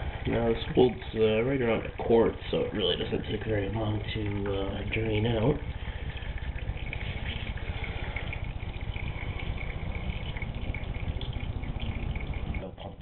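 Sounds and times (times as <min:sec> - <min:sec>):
oil pouring into a pan: 0:00.0 - 0:12.7.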